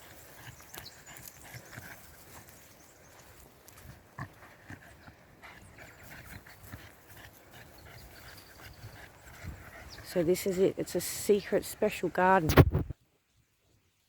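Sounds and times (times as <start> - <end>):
footsteps on dirt track: 0.0 - 10.2.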